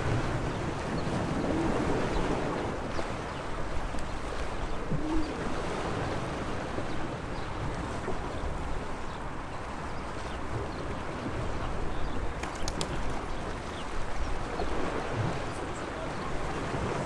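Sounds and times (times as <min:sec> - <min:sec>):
waves splashing on shore: 0:00.0 - 0:17.0.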